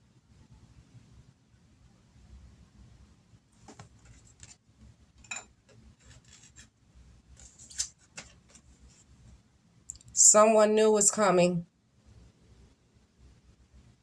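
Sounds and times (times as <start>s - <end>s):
cards rustling and clicking: 3.6s - 4.6s, 6.0s - 6.7s, 7.3s - 9.0s.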